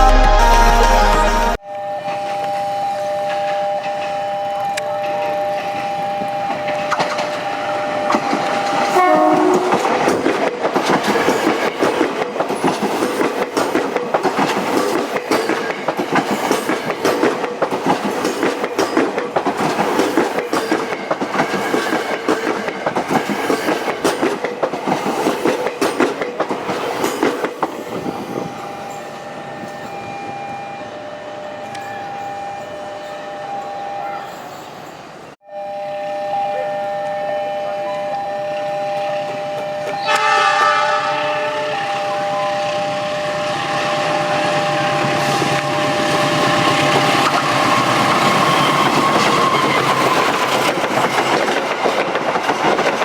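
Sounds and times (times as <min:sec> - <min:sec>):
two-tone train horn: 0:01.5 - 0:06.8, 0:07.5 - 0:10.0, 0:35.4 - 0:48.0
train wheels clattering: 0:05.1 - 0:28.1, 0:44.3 - 0:53.0.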